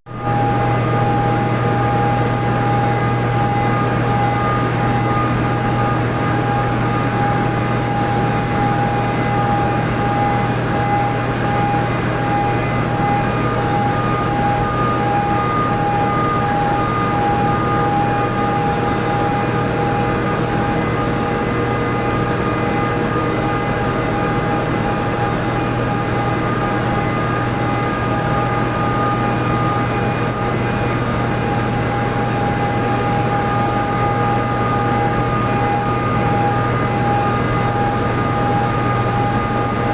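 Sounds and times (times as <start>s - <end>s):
high-pitched machinery whine: 0.1s - 39.9s
low machinery hum: 0.1s - 39.9s.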